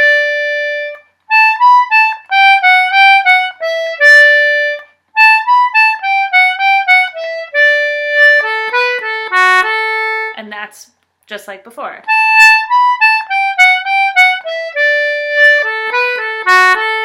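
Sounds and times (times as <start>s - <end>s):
concertina playing a reel: 12.1s - 17.0s.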